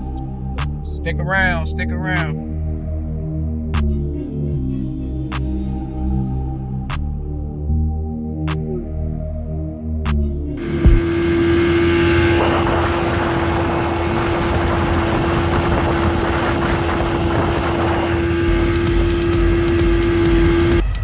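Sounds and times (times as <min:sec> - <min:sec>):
outboard motor running: 0:10.6 - 0:20.8.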